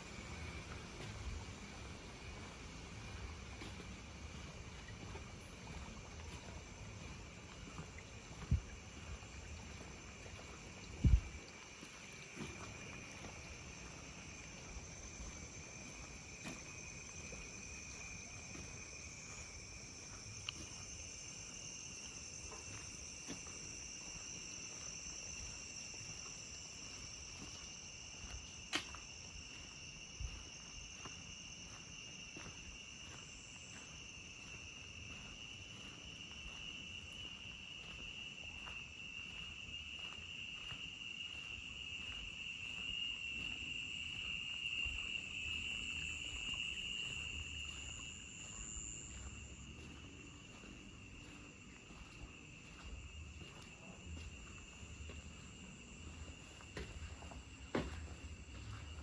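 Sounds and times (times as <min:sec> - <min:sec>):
crickets chirring: 0:00.0 - 0:59.0
faint ticks: 0:20.1 - 0:20.8, 0:28.2 - 0:29.7.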